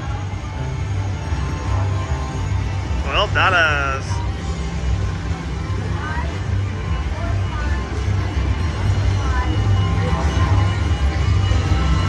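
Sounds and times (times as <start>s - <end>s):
slot machine game music: 0.5s - 5.6s.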